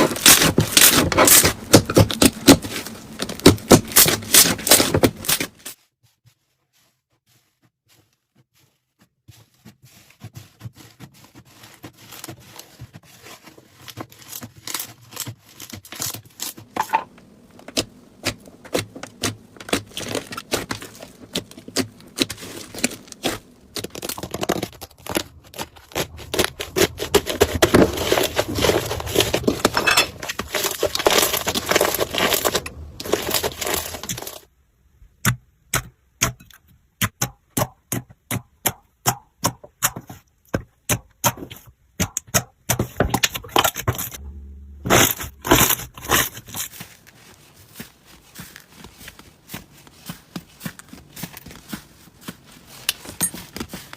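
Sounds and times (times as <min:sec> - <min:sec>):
slime crackling and popping: 0:17.6 - 0:34.4.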